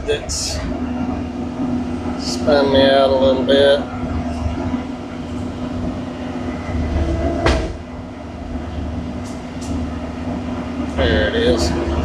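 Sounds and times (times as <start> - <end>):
diesel engine rumbling: 0.0 - 12.0
sharp clunk: 7.4 - 7.8.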